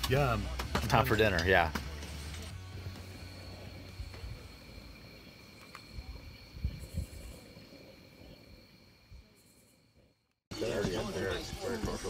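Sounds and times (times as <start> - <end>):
crickets trilling: 2.5 - 10.3.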